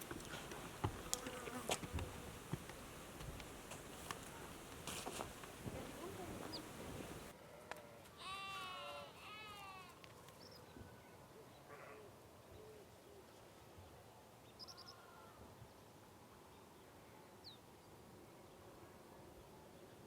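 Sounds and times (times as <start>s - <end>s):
farm animal bleating: 7.6s - 10.0s.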